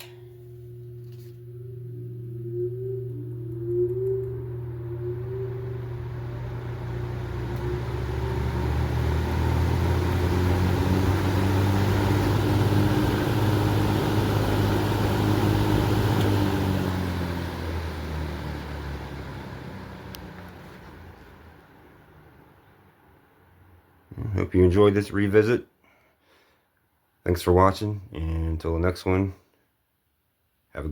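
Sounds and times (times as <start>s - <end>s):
box fan motor hum: 0.0s - 23.2s
fan air rushing: 0.0s - 23.2s.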